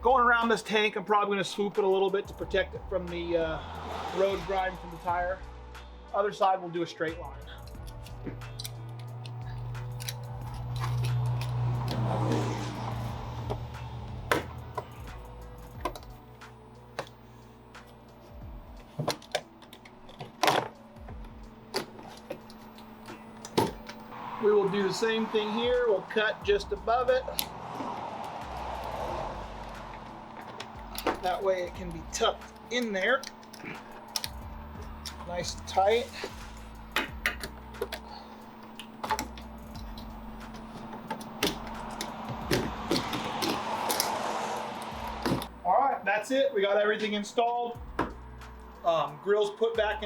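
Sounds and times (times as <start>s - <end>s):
steady low hum: 12.8s - 45.7s.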